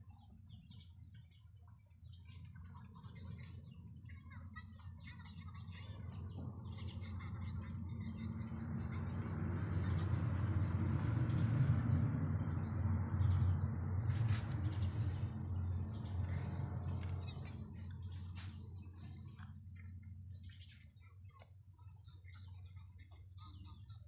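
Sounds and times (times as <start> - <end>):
faint bird chirps: 0.0 - 24.0
low rumble: 6.1 - 20.6.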